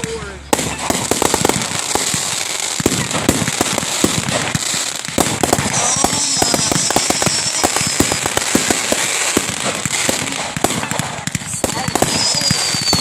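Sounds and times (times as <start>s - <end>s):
fireworks popping and crackling: 0.0s - 13.0s
high descending whistle: 5.8s - 8.3s, 11.5s - 13.0s.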